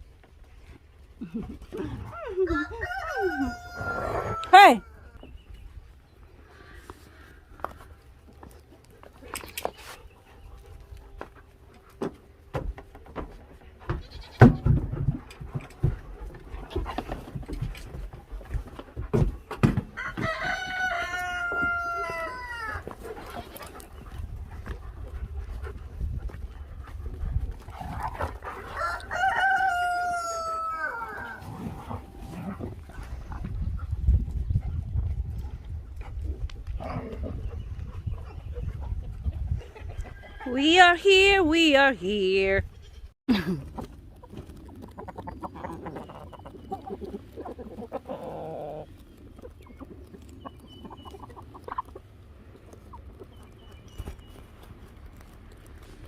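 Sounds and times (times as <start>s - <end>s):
chickens clucking: 0.8s - 40.5s, 43.6s - 54.8s
rooster crowing: 2.4s - 5.2s, 20.0s - 22.9s, 28.8s - 31.5s.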